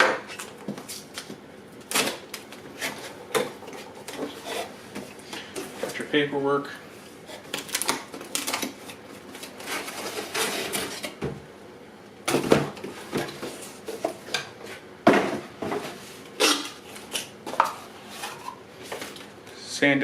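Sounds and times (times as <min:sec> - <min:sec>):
paper and packaging rustling: 0:07.3 - 0:11.2.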